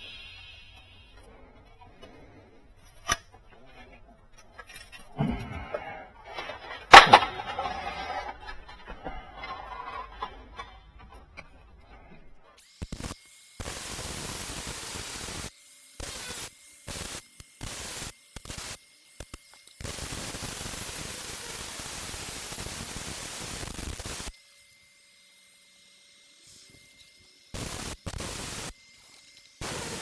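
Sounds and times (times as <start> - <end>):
loud steady hiss bursts: 12.8 - 18.8, 19.8 - 24.3, 27.5 - 28.7, 29.6 - 30.0.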